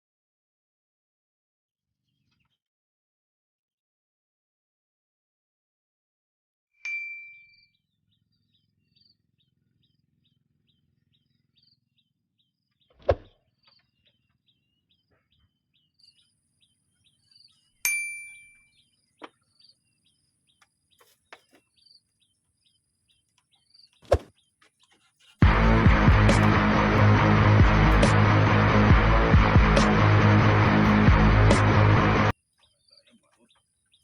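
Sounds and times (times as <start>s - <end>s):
sharp metallic ding: 6.9s - 7.6s, 17.9s - 18.7s
faint high chirps: 6.9s - 7.9s.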